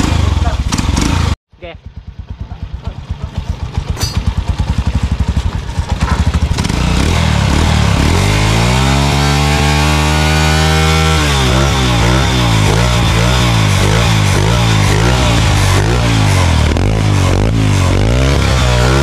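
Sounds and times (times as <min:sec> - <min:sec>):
motorcycle engine idling and revving: 0:00.0 - 0:19.0.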